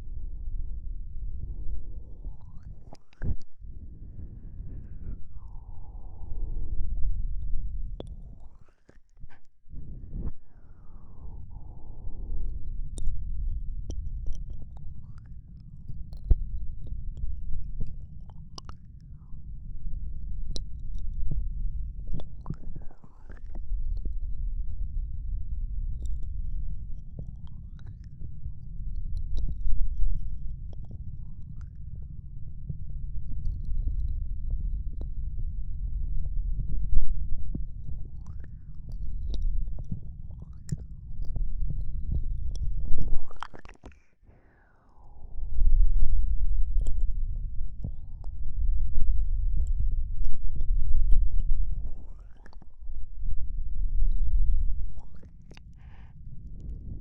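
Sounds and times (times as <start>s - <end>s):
low breathy rumble: 0.0s - 57.0s
breath on microphone: 1.9s - 6.8s, 43.1s - 45.4s, 55.0s - 57.0s
wet tongue and lip clicks: 2.4s - 3.5s, 22.1s - 24.2s, 27.2s - 28.2s, 38.0s - 44.2s, 51.1s - 52.8s, 54.1s - 56.1s
wet mouth clicks and smacks: 42.5s - 44.0s, 51.8s - 52.7s, 55.0s - 56.0s.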